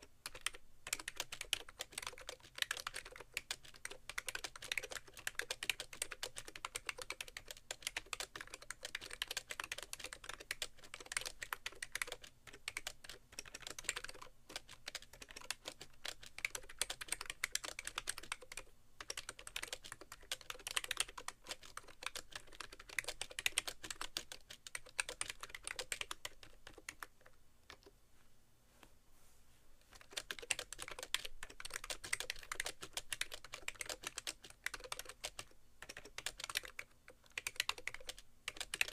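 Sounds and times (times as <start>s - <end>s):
fast keyboard typing: 0.0s - 27.9s, 29.9s - 38.9s.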